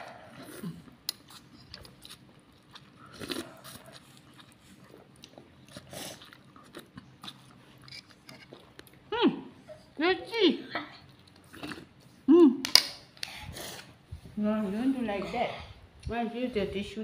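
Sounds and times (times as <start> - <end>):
child chewing food: 0.0 - 10.0, 10.7 - 12.3.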